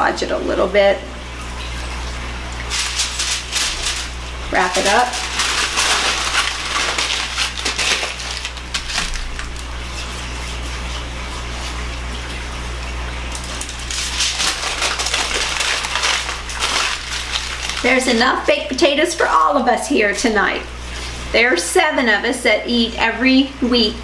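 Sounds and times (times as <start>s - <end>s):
steady low hum: 0.0s - 21.5s
aluminium foil crinkling: 2.6s - 10.7s, 13.2s - 19.3s.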